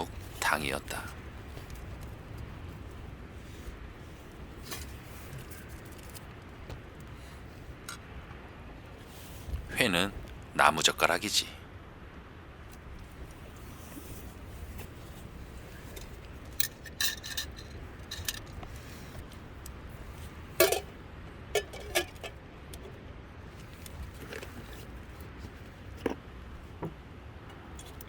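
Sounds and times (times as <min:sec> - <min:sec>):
low wind rumble: 0:00.0 - 0:28.0
cookware and utensils clinking: 0:20.6 - 0:20.9, 0:21.6 - 0:22.4.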